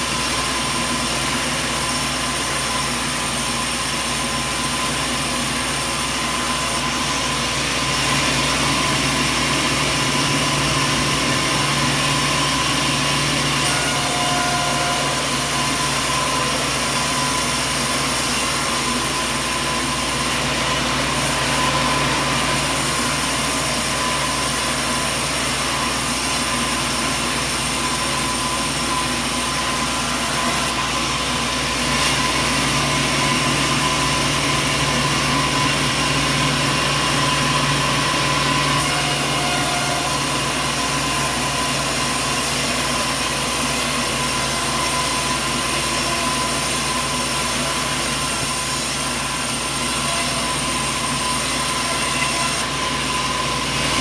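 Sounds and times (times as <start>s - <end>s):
high machine whine: 0.0s - 54.0s
sawmill machinery drone: 0.0s - 54.0s.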